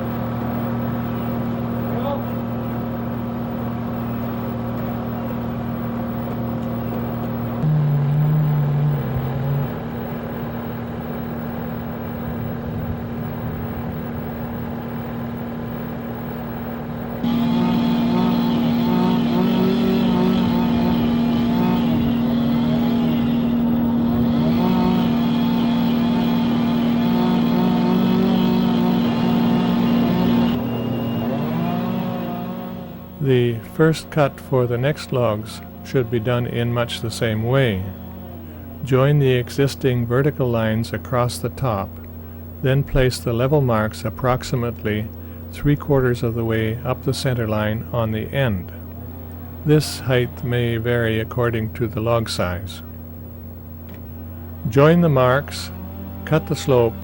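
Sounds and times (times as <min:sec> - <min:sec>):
small engine running at high speed: 0:00.0 - 0:40.8, 0:44.4 - 0:57.0.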